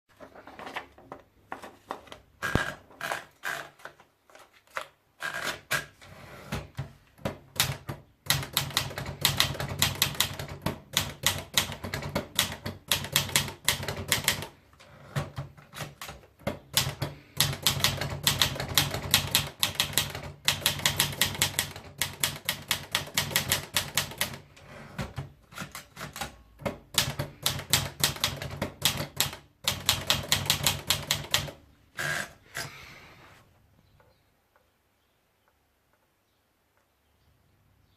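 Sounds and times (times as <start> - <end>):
manual typewriter typing: 5.2 - 32.7.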